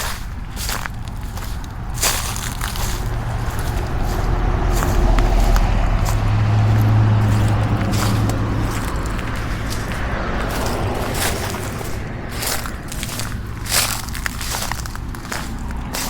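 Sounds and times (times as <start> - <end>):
vehicle engine passing by: 0.0 - 16.0.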